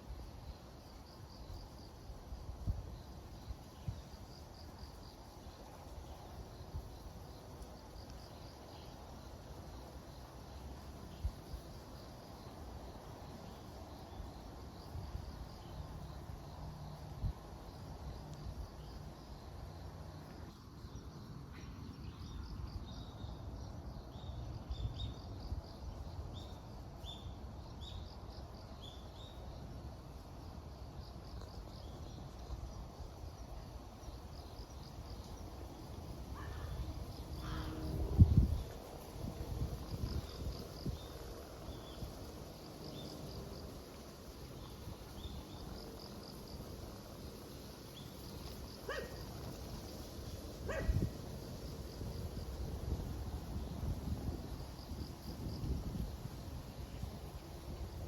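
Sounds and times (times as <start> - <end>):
insects chirping: 0.0 - 58.0
wind rumbling on microphone: 31.7 - 58.0.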